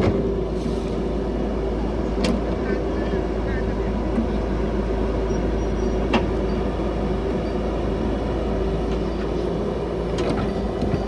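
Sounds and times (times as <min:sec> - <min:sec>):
excavator diesel engine running: 0:00.0 - 0:11.0.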